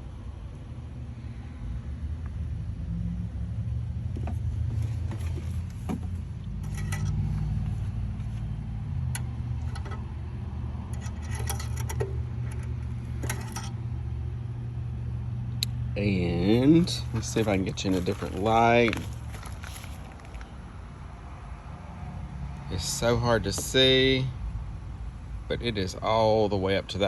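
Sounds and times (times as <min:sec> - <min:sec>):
hands handling things: 0:17.1 - 0:20.6.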